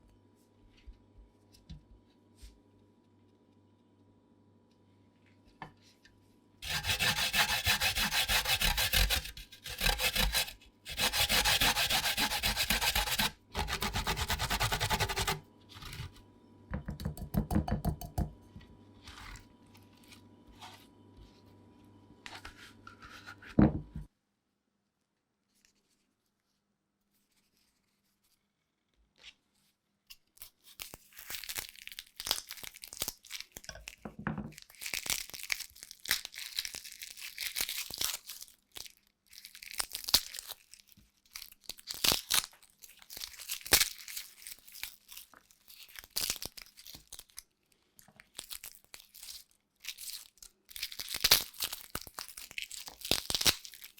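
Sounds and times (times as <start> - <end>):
dry crinkling and tearing: 30.3 - 34.0, 34.6 - 53.9.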